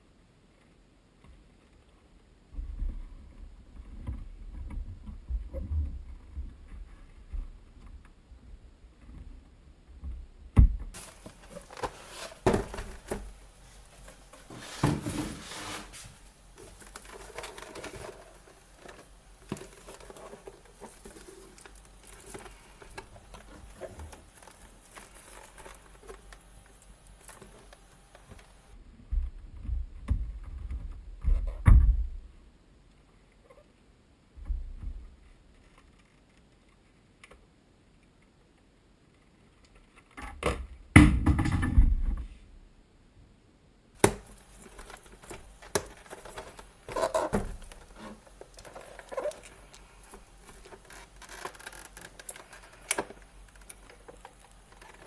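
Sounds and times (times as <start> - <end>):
packaging crinkling and rustling: 11.0 - 28.8, 44.0 - 55.0.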